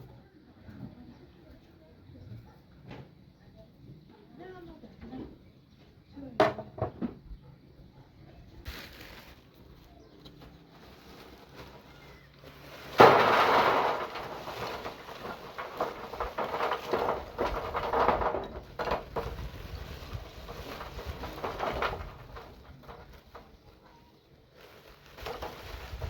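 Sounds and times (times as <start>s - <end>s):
knocks and rustling: 10.2s - 24.0s, 24.7s - 26.0s
loud clatter: 12.5s - 23.6s.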